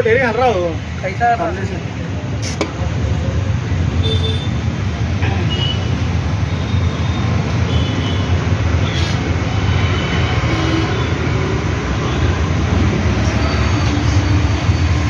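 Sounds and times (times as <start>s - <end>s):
vehicle engine rumble: 0.0s - 15.0s.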